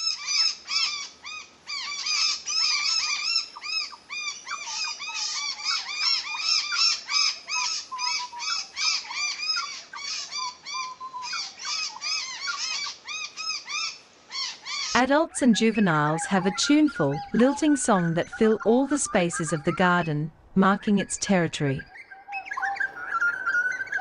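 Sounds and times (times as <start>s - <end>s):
lower wavering bird call: 0.0s - 20.3s, 20.9s - 24.0s
bird calls rising and falling: 0.0s - 24.0s.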